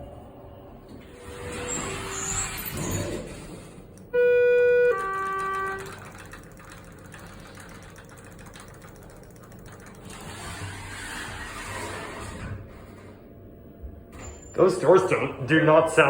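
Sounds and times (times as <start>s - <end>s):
elevator chime ding dong: 4.1s - 6.3s.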